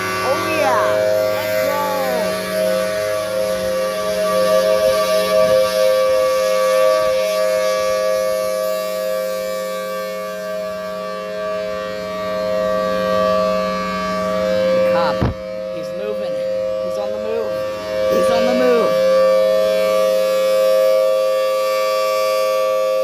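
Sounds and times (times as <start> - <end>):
warning siren: 0.0 - 23.0
brief thump: 15.2 - 15.4.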